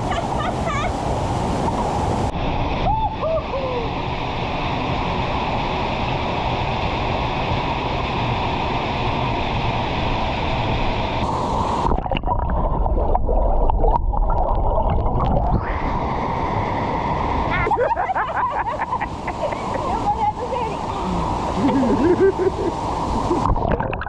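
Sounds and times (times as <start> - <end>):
waterfall rushing: 0.0 - 6.8, 9.2 - 12.1, 15.6 - 23.7.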